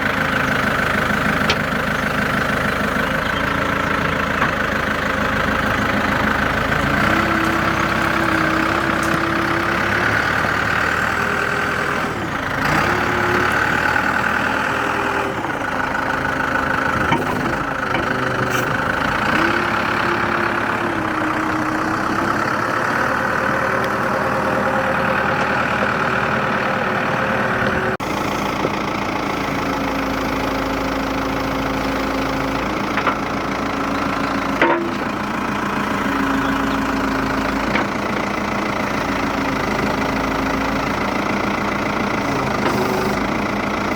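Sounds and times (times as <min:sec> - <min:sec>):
diesel engine idling: 0:00.0 - 0:43.9.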